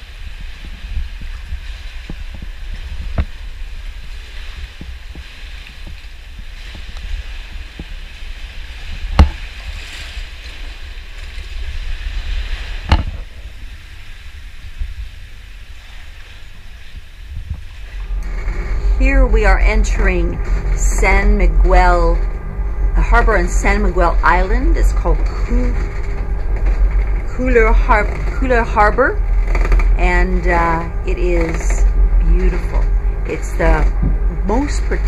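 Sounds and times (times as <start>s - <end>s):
wind on microphone: 0.0s - 35.0s
sharp knocks: 9.1s - 9.4s, 12.8s - 13.3s.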